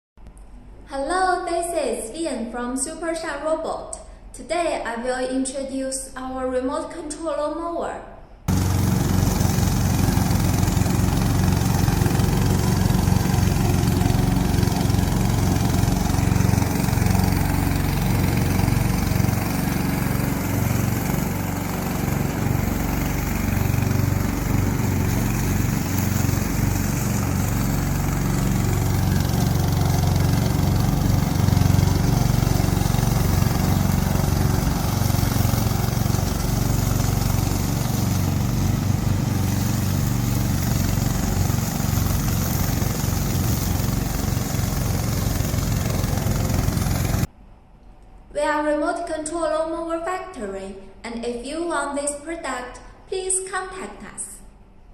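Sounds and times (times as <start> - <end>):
lawn mower engine running: 8.5 - 47.3.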